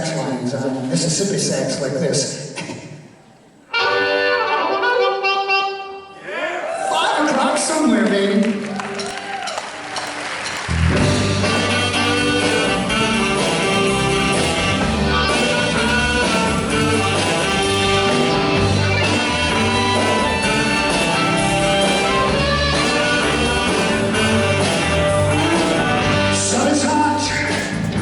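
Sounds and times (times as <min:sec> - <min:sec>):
electric guitar: 0:08.9 - 0:28.0
live rock band playing: 0:09.0 - 0:28.0.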